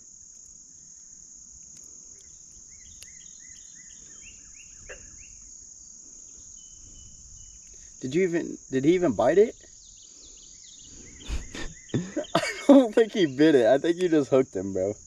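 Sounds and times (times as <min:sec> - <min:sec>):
crickets chirping: 0:00.0 - 0:15.0
faint clicks: 0:01.6 - 0:03.2.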